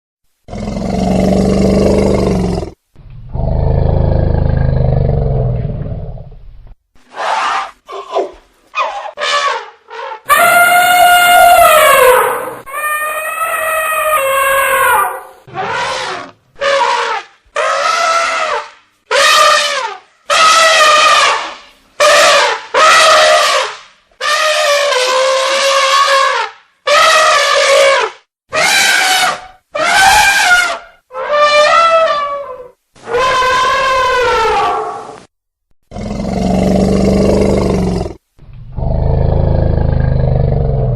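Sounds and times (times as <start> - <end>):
elephant trumpeting: 7.1 - 35.2.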